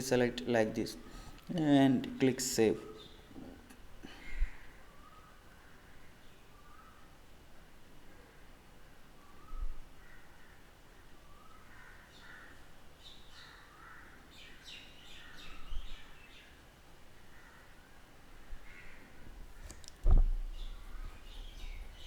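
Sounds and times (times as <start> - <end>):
faint bird chirps: 2.6 - 7.3, 8.0 - 16.6, 17.2 - 22.0
low thump: 20.0 - 20.9.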